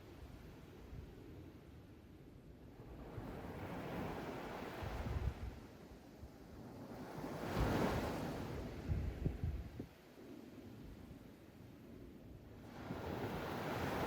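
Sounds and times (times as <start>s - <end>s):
ocean waves breaking on beach: 12.6s - 14.0s.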